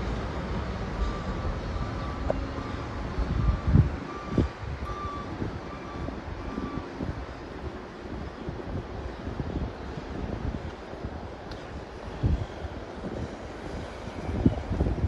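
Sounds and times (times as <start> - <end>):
reversing alarm beeping: 1.0 - 7.0
wind thumps on microphone: 8.5 - 15.0.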